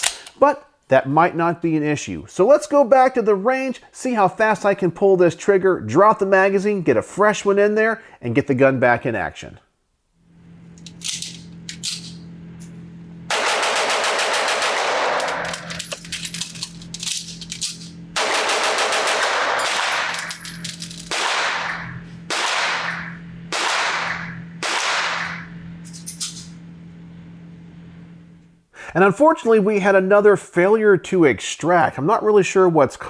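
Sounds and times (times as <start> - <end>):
steady low hum: 10.0 - 28.9
pistol fire: 13.3 - 15.4, 18.2 - 20.2, 21.1 - 25.5.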